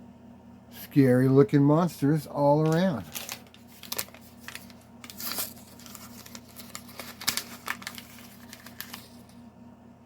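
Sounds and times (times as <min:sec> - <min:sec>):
plastic packaging crinkling and tearing: 0:02.6 - 0:09.4.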